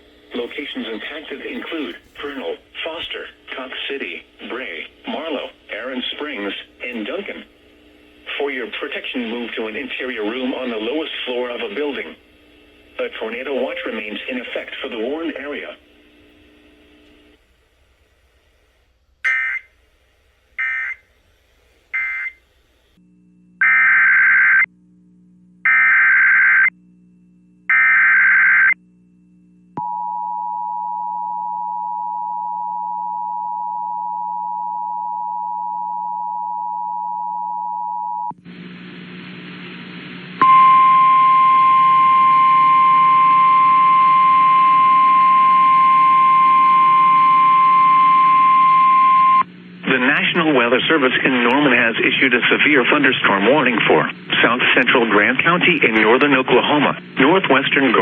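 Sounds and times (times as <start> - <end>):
static: 0.0 - 23.0, 38.4 - 58.0
two-tone attention signal: 13.6 - 14.3
steady warning alarm tone: 13.6 - 14.7, 19.2 - 19.8, 20.6 - 21.1, 21.9 - 22.4, 40.4 - 49.5.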